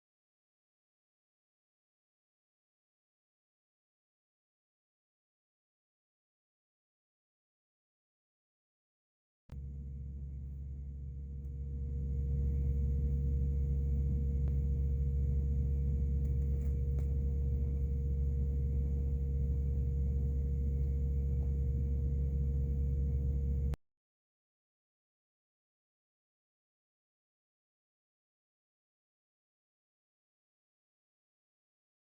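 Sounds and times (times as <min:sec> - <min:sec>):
motor running with low rumble: 0:09.5 - 0:23.8.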